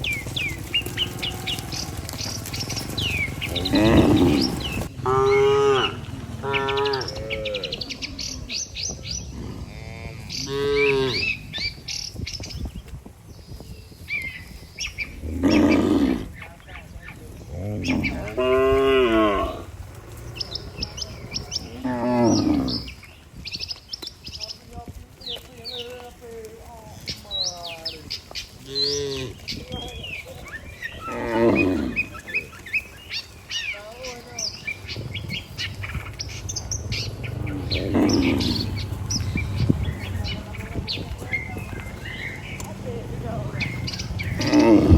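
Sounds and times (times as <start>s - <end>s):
small birds chirping: 0.0s - 44.9s
cattle mooing: 0.2s - 8.6s, 9.3s - 11.4s, 15.2s - 16.4s, 17.5s - 23.0s, 28.6s - 29.4s, 30.9s - 32.5s, 34.0s - 40.6s, 41.2s - 44.9s.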